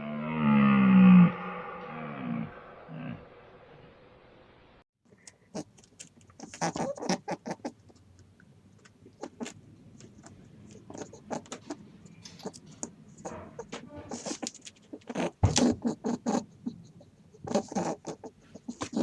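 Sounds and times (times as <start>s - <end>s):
small animal clicking and scuffing: 5.1s - 16.0s.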